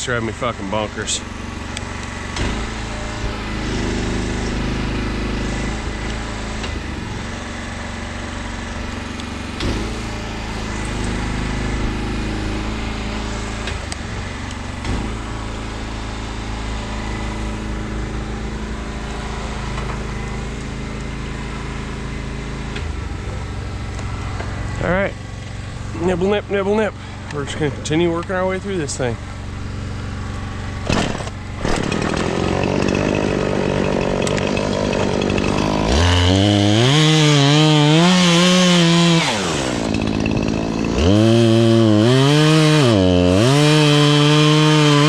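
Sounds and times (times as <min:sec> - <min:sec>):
small engine running: 0:00.0 - 0:45.0.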